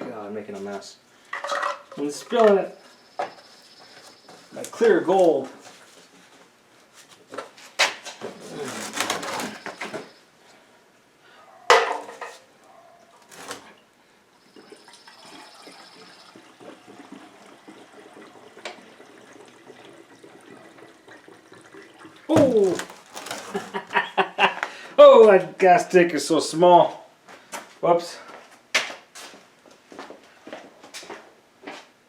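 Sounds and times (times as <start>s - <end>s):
gasoline pouring: 13.3s - 23.9s.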